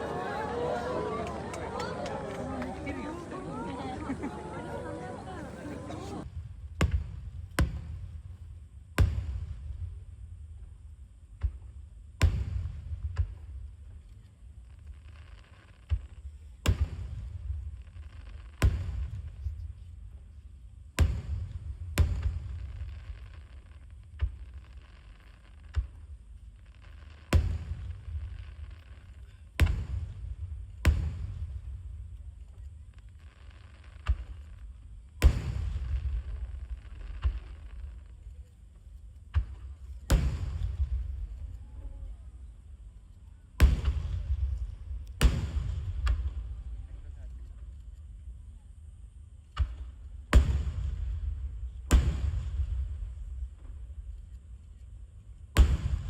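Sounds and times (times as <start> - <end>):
firework shells booming: 21.0 - 38.2, 39.2 - 41.6, 43.6 - 46.6.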